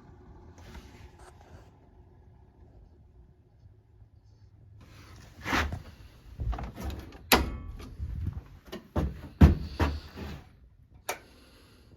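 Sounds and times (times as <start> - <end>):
knocks and clunks: 5.5 - 10.5.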